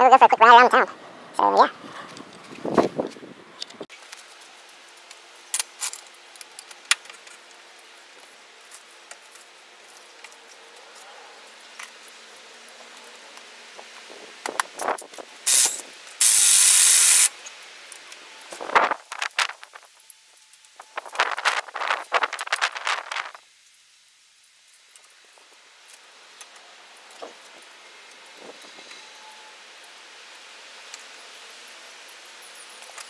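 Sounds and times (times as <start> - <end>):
loud steady hiss: 11.4 - 33.0.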